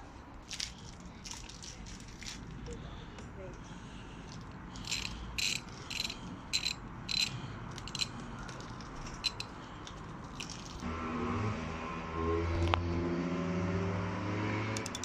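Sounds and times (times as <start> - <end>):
ratchet wrench clicking: 4.8 - 10.8, 14.8 - 15.0.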